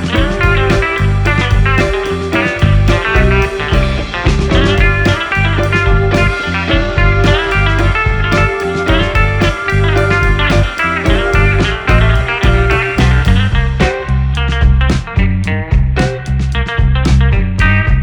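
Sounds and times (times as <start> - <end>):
blues-rock guitar music: 0.0 - 18.0.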